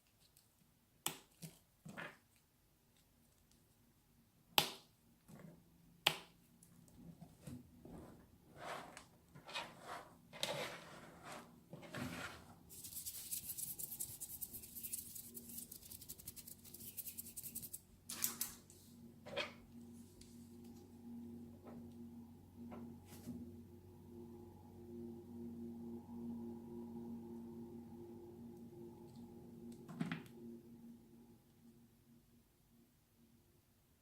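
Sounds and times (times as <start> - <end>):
soft scratchy strokes: 9.6 - 17.9
fast fine crackling scratching: 12.7 - 17.8.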